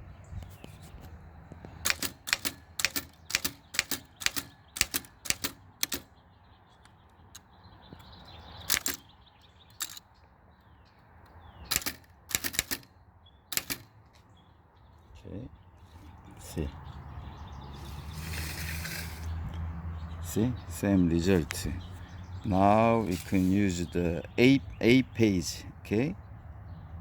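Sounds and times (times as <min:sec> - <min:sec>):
typewriter key strikes: 0:01.8 - 0:06.1, 0:08.6 - 0:09.0, 0:11.7 - 0:12.9, 0:13.5 - 0:13.9.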